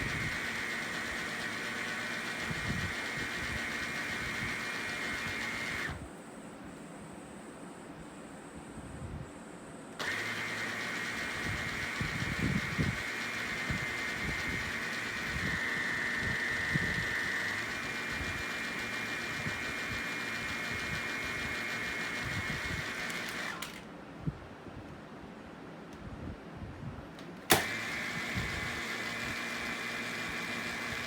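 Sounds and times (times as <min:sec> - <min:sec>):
vacuum floor brush whining: 0:00.0 - 0:06.0, 0:10.0 - 0:23.8, 0:27.5 - 0:31.0
switch click: 0:27.5 - 0:27.8.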